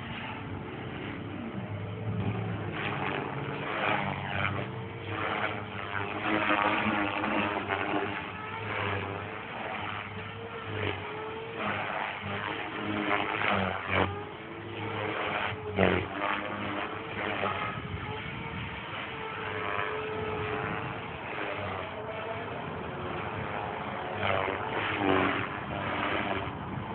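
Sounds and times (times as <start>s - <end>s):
electric motor whine: 0.0s - 26.9s
helicopter rotor blades whirring: 0.0s - 26.9s.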